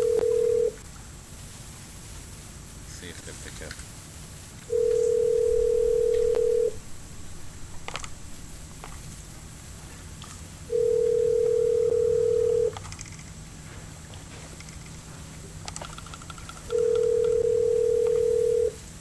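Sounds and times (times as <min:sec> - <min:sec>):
telephone ringback tone: 0:00.0 - 0:00.8, 0:04.7 - 0:06.8, 0:10.7 - 0:12.8, 0:16.7 - 0:18.8.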